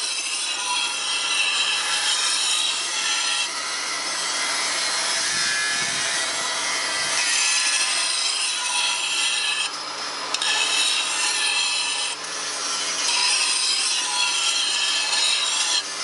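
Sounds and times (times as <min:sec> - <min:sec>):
glass edge grinder grinding: 0:00.0 - 0:03.5, 0:07.0 - 0:16.0.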